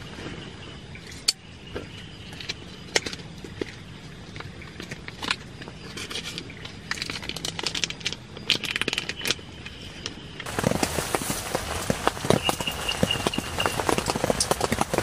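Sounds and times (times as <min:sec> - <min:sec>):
crackling and clicking: 0:02.3 - 0:15.0
raindrops thudding on a surface: 0:10.4 - 0:15.0
heavy rain hissing: 0:10.5 - 0:15.0.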